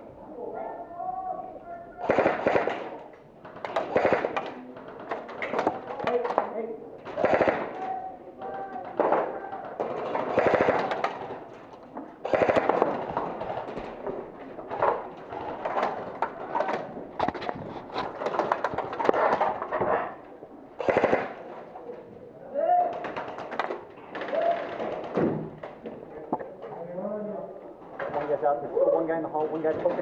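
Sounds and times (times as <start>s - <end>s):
electric rifles firing bursts: 2.0s - 3.0s, 3.6s - 4.6s, 7.0s - 7.9s, 10.0s - 11.5s, 12.2s - 13.8s, 20.8s - 21.5s.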